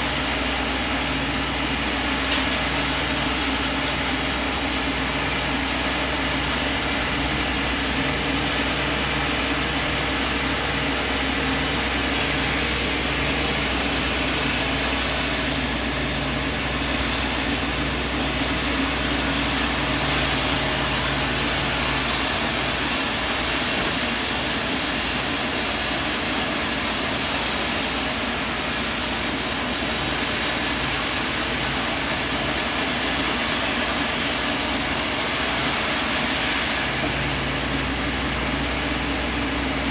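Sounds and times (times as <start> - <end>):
low machine hum: 0.0 - 26.3, 35.2 - 39.9
band sawmill running: 0.0 - 39.9.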